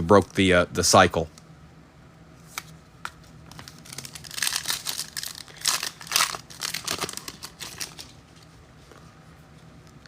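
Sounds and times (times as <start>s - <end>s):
wrappers crinkling and tearing: 3.5s - 8.2s.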